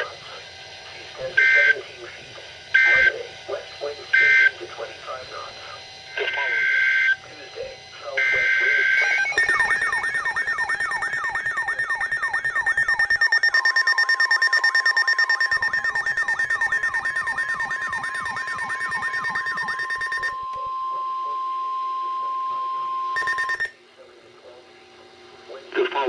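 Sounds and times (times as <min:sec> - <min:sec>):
steady electronic tone: 0:02.7 - 0:23.7
electronic alert tone sweeping down: 0:08.2 - 0:21.4.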